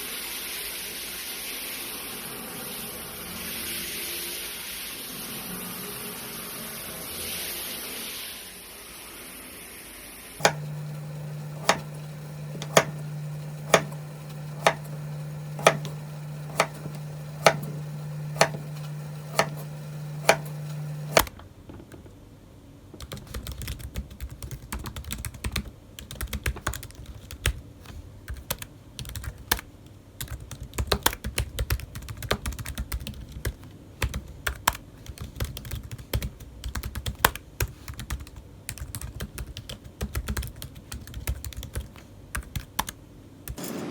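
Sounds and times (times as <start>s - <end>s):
keyboard typing: 10.4s - 21.3s, 23.0s - 27.6s, 28.3s - 43.9s.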